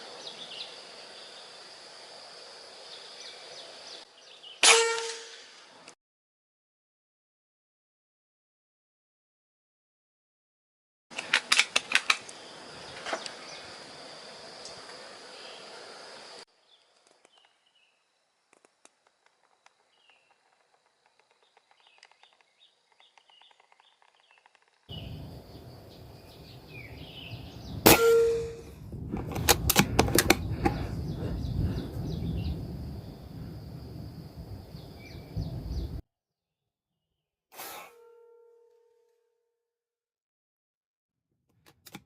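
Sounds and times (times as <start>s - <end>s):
outdoor background noise: 0.0s - 6.0s, 11.1s - 36.0s
small birds chirping: 14.6s - 18.1s, 19.5s - 27.9s, 30.4s - 36.0s
air rifle shot: 27.8s - 28.7s
sharp clicks: 29.2s - 30.8s.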